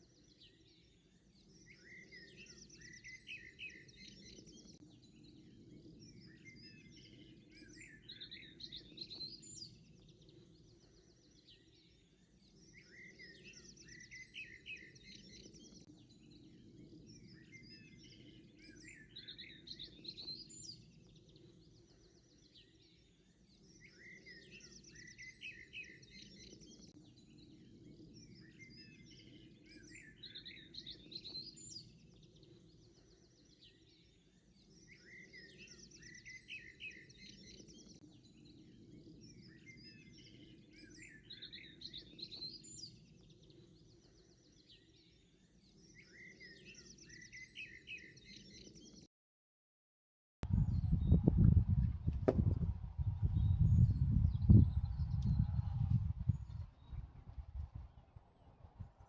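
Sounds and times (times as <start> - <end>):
songbird chirping: 50.4 - 59.0.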